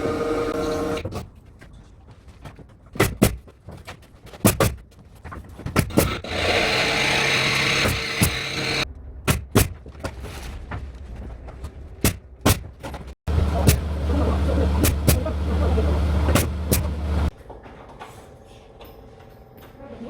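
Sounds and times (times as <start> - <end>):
power tool running: 0.0 - 1.0, 6.0 - 8.8.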